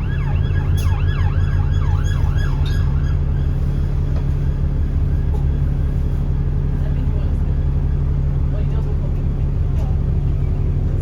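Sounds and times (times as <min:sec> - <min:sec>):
emergency siren yelping: 0:00.0 - 0:03.8
bus diesel engine drone: 0:00.0 - 0:11.0.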